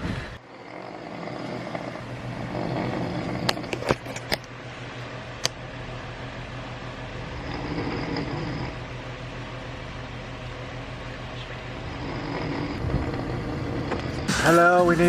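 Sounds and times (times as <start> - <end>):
vehicle engine humming: 1.7 - 15.0.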